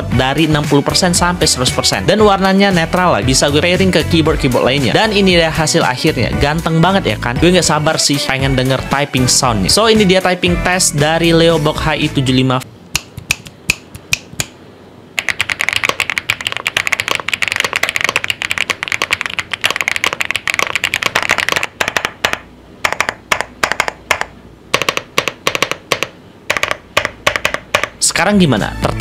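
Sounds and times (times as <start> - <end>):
mechanical keyboard typing: 15.2 - 28.0.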